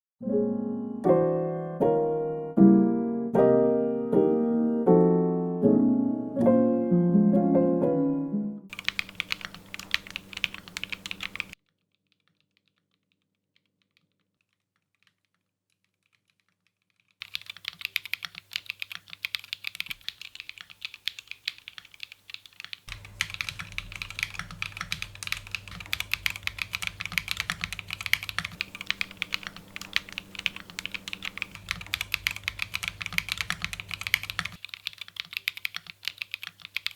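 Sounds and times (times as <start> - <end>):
piano tune: 0.2 - 11.6, 22.9 - 34.6
mechanical keyboard typing: 8.7 - 36.9.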